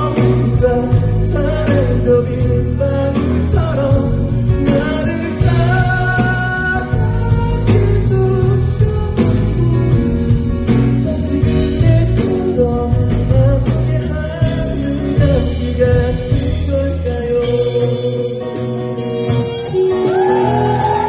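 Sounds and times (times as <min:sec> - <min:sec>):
bass: 0:00.0 - 0:21.0
drums: 0:00.0 - 0:21.0
live band music: 0:00.0 - 0:21.0
man singing: 0:00.0 - 0:21.0.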